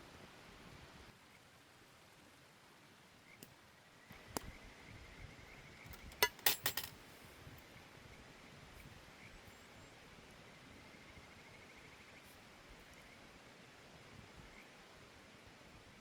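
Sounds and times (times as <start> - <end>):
metal clinks of cookware: 5.9 - 6.9.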